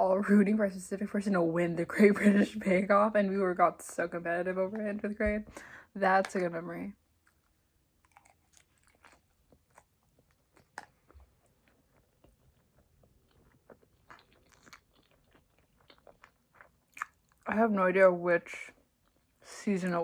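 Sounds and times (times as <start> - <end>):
person chewing food: 7.1 - 17.5, 18.8 - 19.5.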